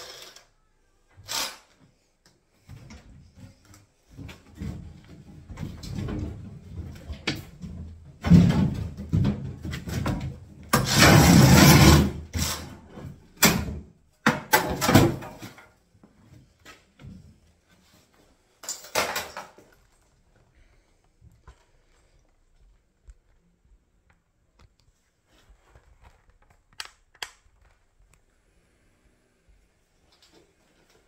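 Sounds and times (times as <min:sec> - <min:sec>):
wood knocks and bangs: 0:04.2 - 0:12.1
rough scraping crash: 0:10.8 - 0:12.7.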